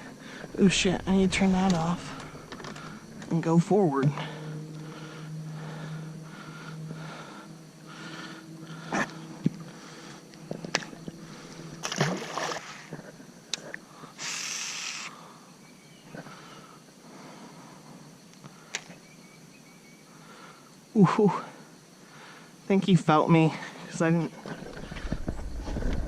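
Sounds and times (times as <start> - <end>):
small boat motor humming: 0.0 - 13.4
splashing water: 10.4 - 13.0.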